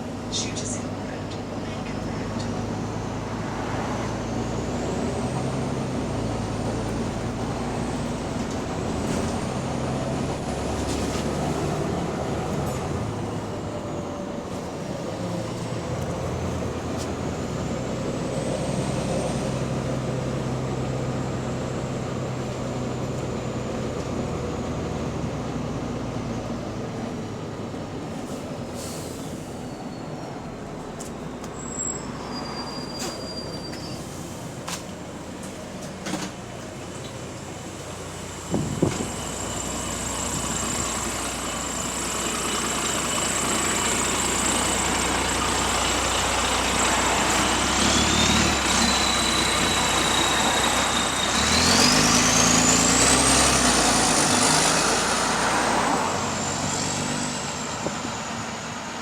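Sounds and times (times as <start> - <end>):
bus engine running: 0.0 - 59.0.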